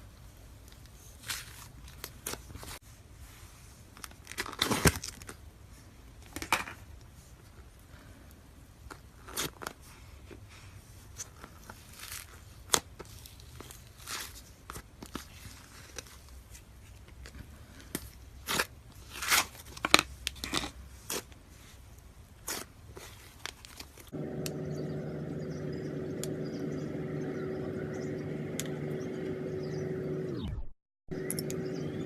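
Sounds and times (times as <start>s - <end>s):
steady low hum: 24.1s - 32.0s.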